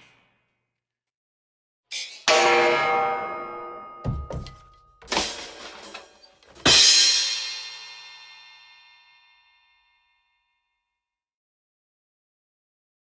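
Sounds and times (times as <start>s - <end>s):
cymbal crash ringing: 2.3s - 5.8s
low drum thumps: 4.1s - 4.6s.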